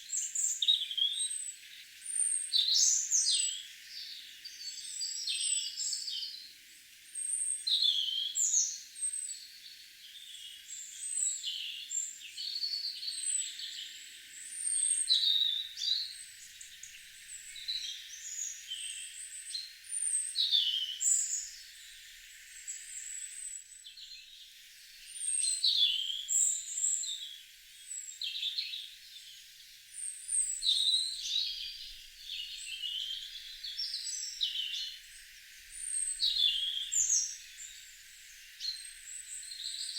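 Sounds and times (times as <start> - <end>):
songbirds chirping and whistling: 22.5 - 39.9.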